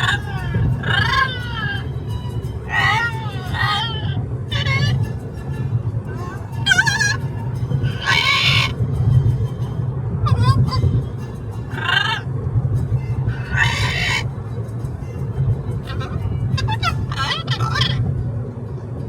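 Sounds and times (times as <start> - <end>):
parrot calling and screeching: 0.0 - 8.8, 10.2 - 12.3, 13.2 - 14.4, 15.8 - 18.1
low road rumble: 0.0 - 19.0.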